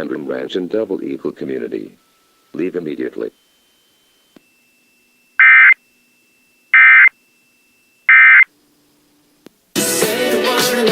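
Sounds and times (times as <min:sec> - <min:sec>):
buzzy digital data bursts: 0:05.4 - 0:05.8, 0:06.7 - 0:07.1, 0:08.1 - 0:08.5
music: 0:09.7 - 0:10.9.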